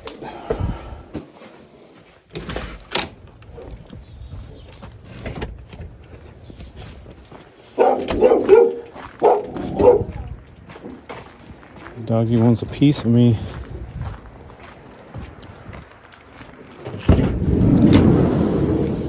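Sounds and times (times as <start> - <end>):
dog barking: 7.8 - 10.3.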